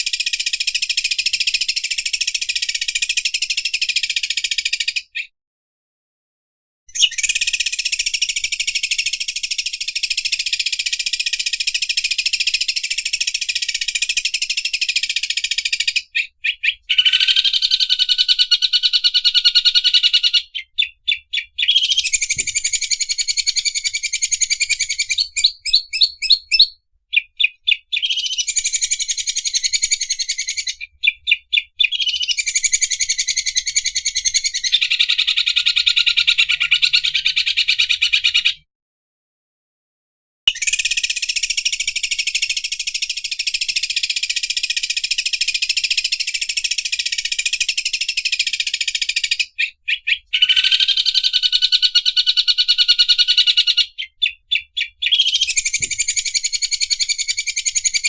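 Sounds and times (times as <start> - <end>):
bird trilling buzzily: 6.9 - 26.8, 27.8 - 38.5, 45.8 - 58.0.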